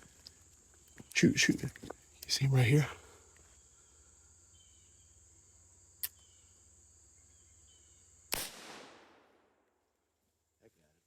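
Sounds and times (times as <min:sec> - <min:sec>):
faint high insect drone: 0:00.0 - 0:08.6, 0:09.2 - 0:11.0
gunshot: 0:08.3 - 0:09.6.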